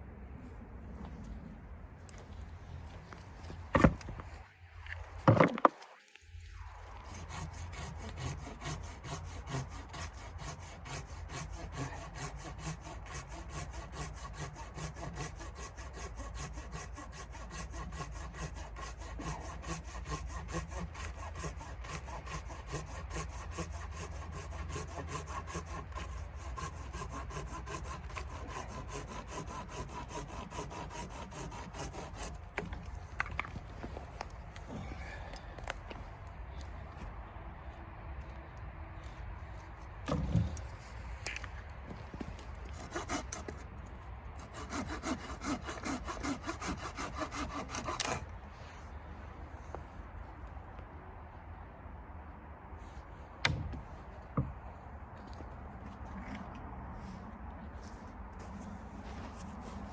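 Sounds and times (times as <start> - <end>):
saw cutting through wood: 6.6 - 34.0, 42.2 - 43.8, 44.4 - 48.8.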